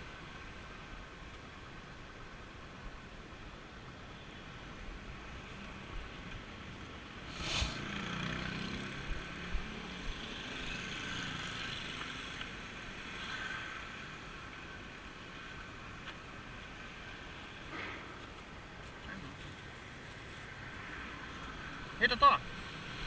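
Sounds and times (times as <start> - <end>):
brief loud rush of noise: 7.3 - 8.1.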